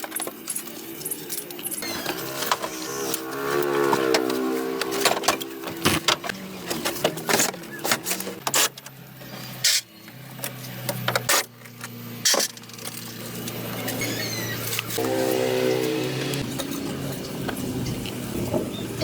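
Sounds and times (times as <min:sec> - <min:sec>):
hand tools clicking and knocking: 0:00.0 - 0:13.6.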